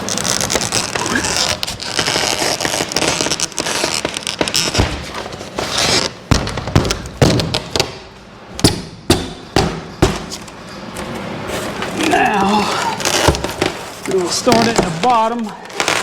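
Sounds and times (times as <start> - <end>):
sharp knocks: 8.6 - 10.4
foam panel scraping against metal: 11.1 - 16.0.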